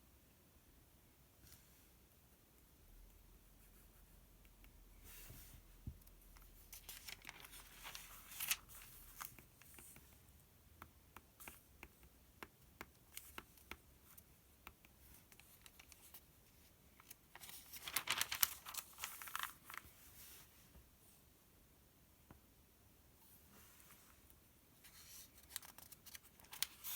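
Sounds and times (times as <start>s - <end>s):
paper pages rustling: 6.6s - 10.0s, 15.3s - 20.5s, 24.8s - 26.9s.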